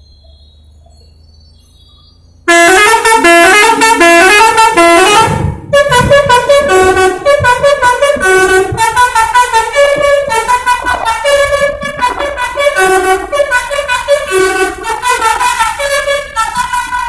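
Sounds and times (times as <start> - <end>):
musical air horn melody: 2.5 - 17.0.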